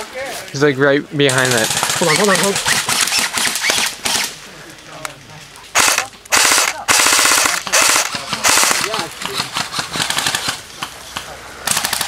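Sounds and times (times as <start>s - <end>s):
airsoft rifle firing: 1.3s - 4.4s, 5.8s - 10.6s, 11.6s - 12.0s.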